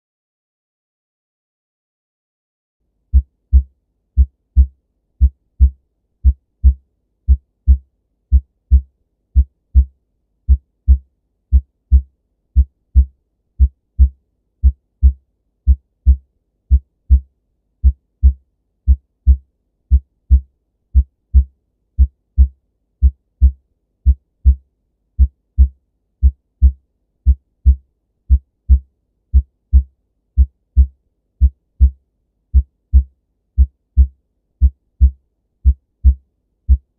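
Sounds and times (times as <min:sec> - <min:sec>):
heartbeat thumps: 0:03.1 - 0:09.9, 0:10.5 - 0:24.6, 0:32.6 - 0:36.9.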